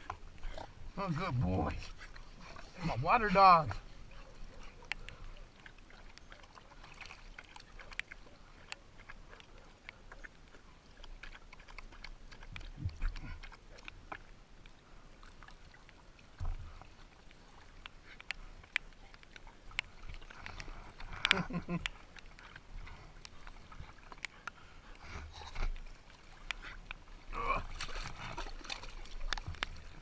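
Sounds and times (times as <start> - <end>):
water splashing and dripping: 0.0 - 30.0
small ticks: 4.1 - 14.8, 15.4 - 27.1.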